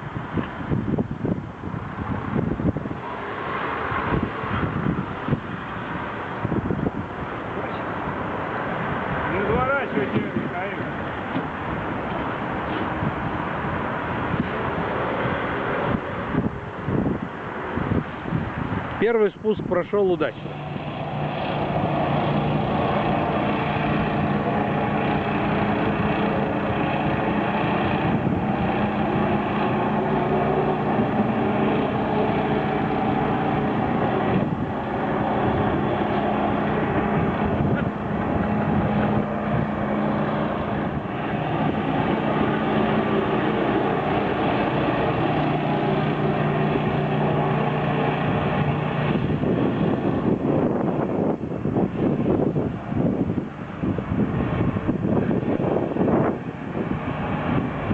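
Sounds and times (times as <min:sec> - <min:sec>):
boat engine running: 0:18.8 - 0:57.9.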